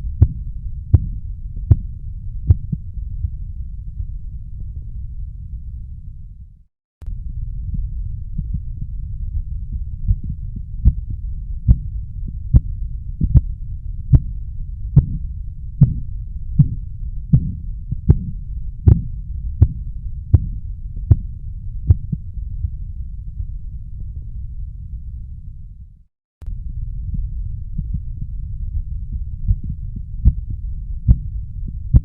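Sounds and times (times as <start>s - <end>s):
low rumble: 0.0s - 32.0s
heartbeat tapping through stethoscope: 0.1s - 1.9s, 2.5s - 3.4s, 7.7s - 8.8s, 9.7s - 14.4s, 15.0s - 22.8s, 29.1s - 32.0s.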